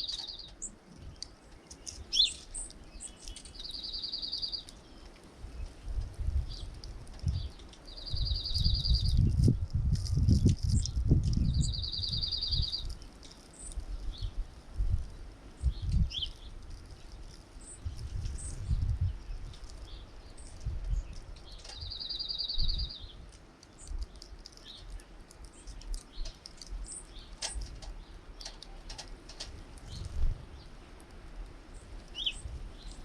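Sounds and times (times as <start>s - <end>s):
bird trill: 0.0s - 0.8s, 1.7s - 5.0s, 7.5s - 9.2s, 10.8s - 13.8s, 21.5s - 23.2s
songbirds chirping: 0.0s - 33.0s.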